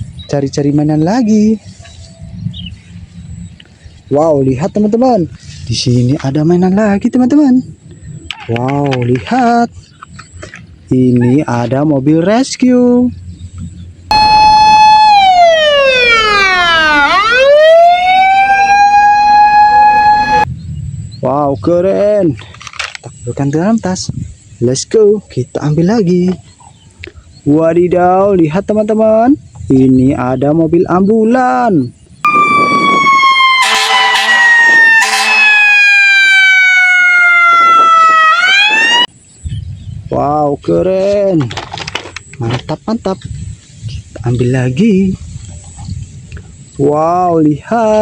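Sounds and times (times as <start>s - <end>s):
siren wailing: 14.1s - 20.5s, 32.3s - 39.1s.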